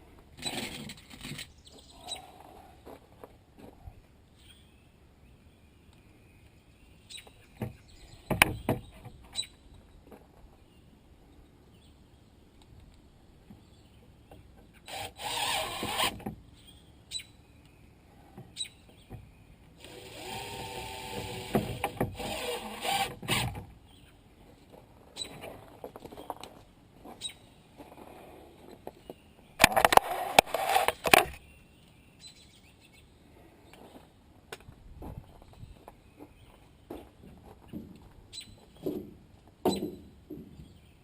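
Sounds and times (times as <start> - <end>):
power drill running: 14.9 - 16.2, 19.8 - 23.4.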